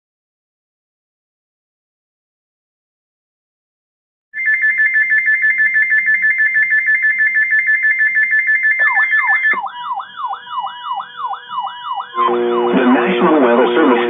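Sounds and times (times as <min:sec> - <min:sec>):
alarm with falling sweeps: 0:04.4 - 0:14.0
alarm warbling between two pitches: 0:07.0 - 0:14.0.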